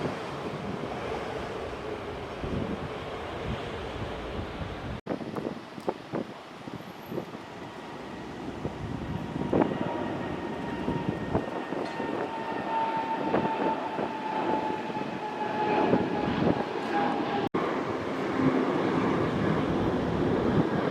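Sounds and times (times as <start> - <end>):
jet engines whining and rumbling: 0.0 - 20.9
wind buffeting microphone: 0.0 - 20.9.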